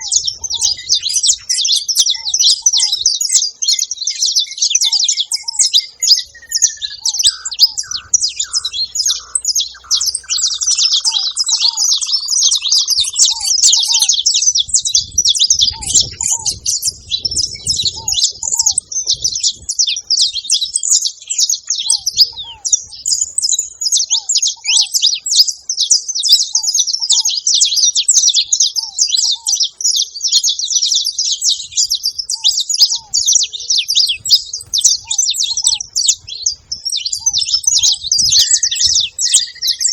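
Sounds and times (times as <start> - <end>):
pair of lower bird notes: 0.0 - 39.9
finch high chattering song: 4.5 - 20.4, 32.3 - 39.9.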